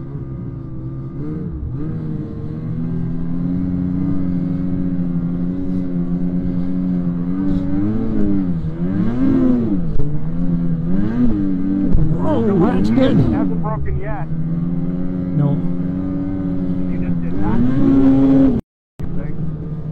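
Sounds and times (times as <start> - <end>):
snowmobile engine revving: 0.0 - 19.4.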